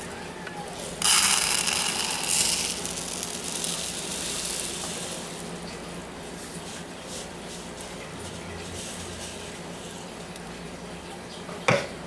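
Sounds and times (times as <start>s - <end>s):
powder granules pouring into plastic jar: 0.9s - 5.6s.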